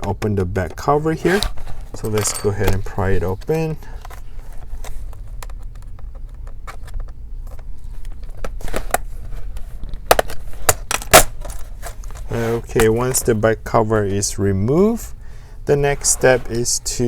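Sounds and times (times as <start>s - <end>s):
plastic clips snapping: 9.8s - 11.6s.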